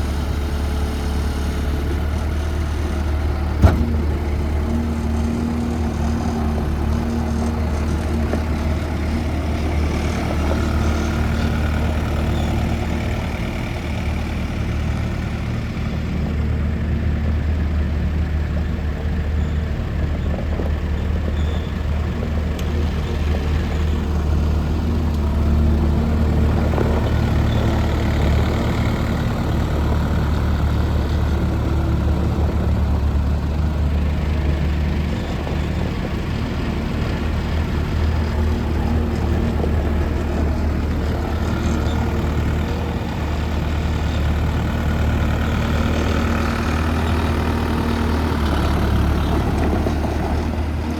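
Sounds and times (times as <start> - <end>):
diesel engine running: 0.0 - 50.9.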